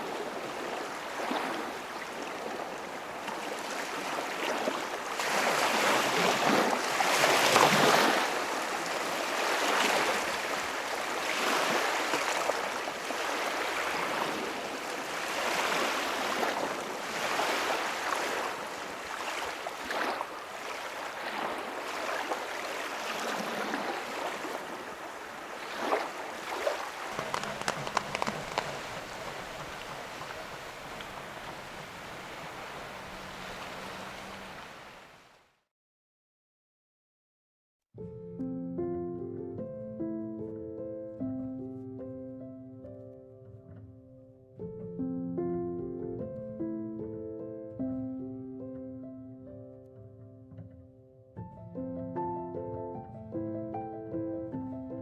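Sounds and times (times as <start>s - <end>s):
waves washing onto shore: 0.0s - 35.4s
sharp clicks: 27.1s - 29.3s.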